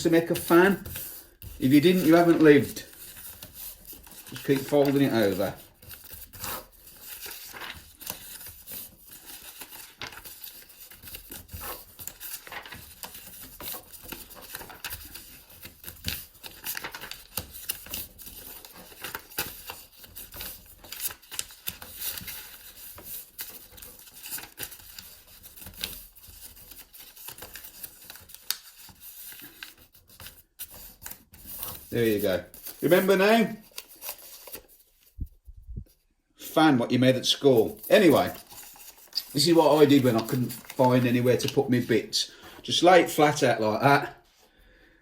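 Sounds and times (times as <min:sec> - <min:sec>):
paper crinkling and creasing: 0:00.0 - 0:35.4, 0:37.3 - 0:43.8.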